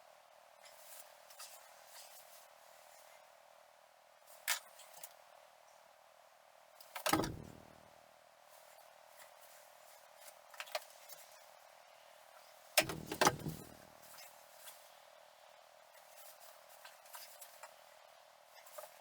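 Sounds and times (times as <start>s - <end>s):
knocks and clatters of building work: 6.8s - 7.9s, 12.7s - 14.9s
rattles: 7.1s - 7.8s, 12.8s - 13.8s.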